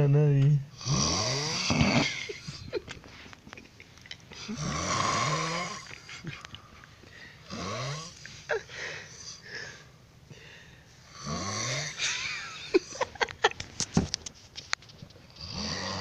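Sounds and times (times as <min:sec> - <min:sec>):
person snoring: 0:00.8 - 0:02.6, 0:04.4 - 0:06.0, 0:07.5 - 0:08.3, 0:11.1 - 0:12.1, 0:15.4 - 0:16.0.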